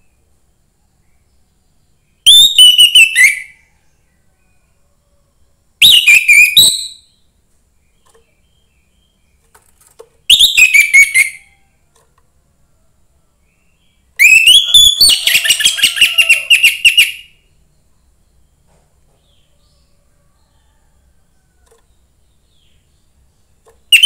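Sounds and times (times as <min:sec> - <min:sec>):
thrush singing whistled notes: 0:02.2 - 0:03.7, 0:05.8 - 0:07.2, 0:10.3 - 0:11.6, 0:14.2 - 0:17.5.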